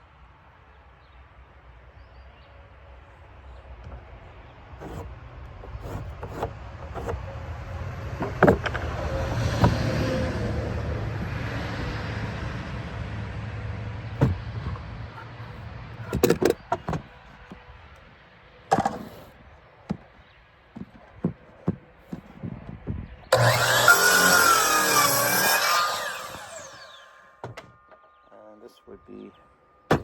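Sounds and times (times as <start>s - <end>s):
sharp knocks and clicks: 4.8s - 7.2s, 8.2s - 9.8s, 14.2s - 17.6s.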